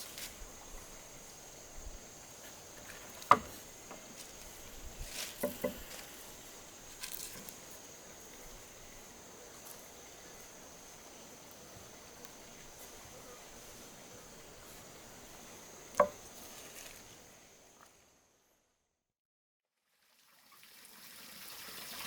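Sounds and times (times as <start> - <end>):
sharp knocks: 3.2 - 4.0, 5.4 - 5.9, 16.0 - 16.2.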